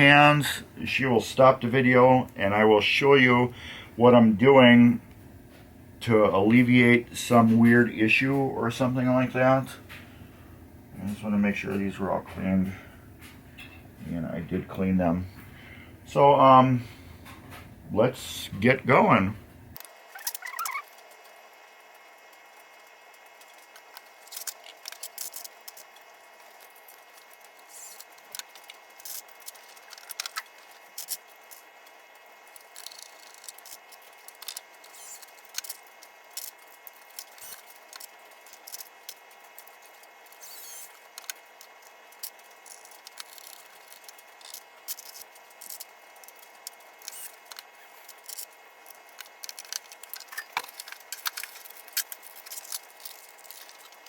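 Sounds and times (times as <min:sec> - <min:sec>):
faint hum: 0:00.0 - 0:54.0
small parts clicking and rattling: 0:22.3 - 0:54.0.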